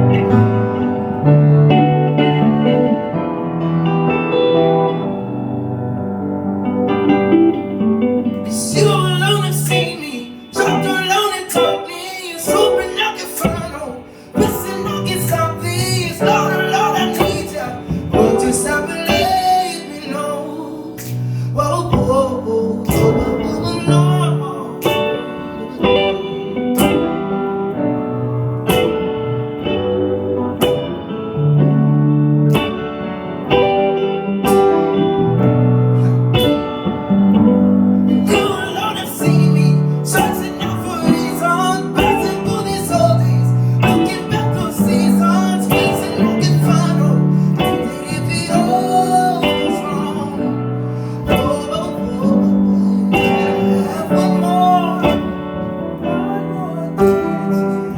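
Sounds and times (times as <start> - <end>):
acoustic guitar strumming: 0.0 - 57.9
person singing: 7.5 - 27.6, 35.9 - 37.1, 37.8 - 57.9.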